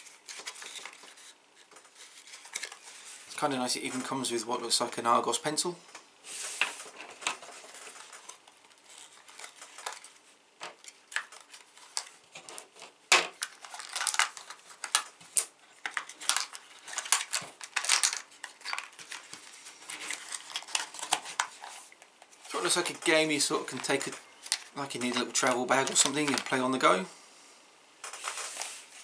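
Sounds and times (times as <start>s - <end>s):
packaging being handled: 0.0s - 3.4s, 6.3s - 27.1s
game pieces clicking and rattling: 13.6s - 19.1s.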